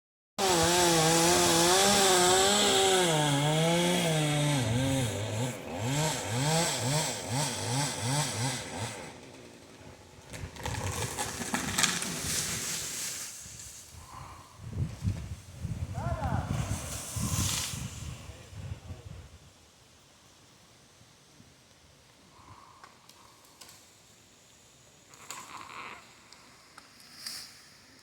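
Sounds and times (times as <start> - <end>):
chainsaw cutting wood: 0.4 - 12.9, 25.1 - 27.6.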